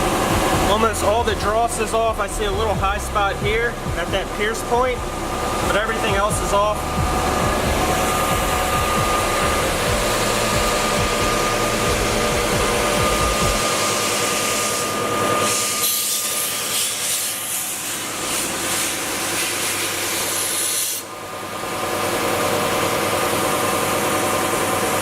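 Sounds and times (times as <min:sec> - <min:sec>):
belt sander humming: 0:00.0 - 0:21.1
loud grinding hiss on metal: 0:12.8 - 0:21.1.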